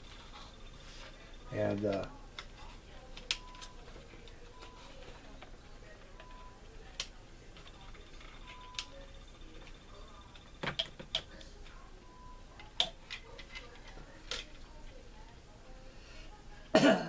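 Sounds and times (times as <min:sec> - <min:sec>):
plastic parts clicking: 0:12.6 - 0:14.6.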